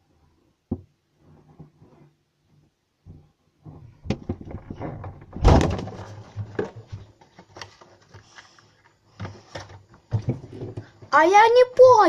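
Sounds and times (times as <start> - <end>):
knocks and clatter: 3.1 - 7.7.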